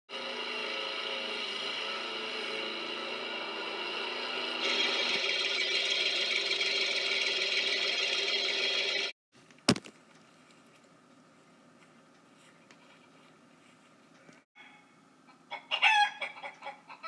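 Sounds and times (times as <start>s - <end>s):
steady engine sound effect: 3.1s - 9.1s.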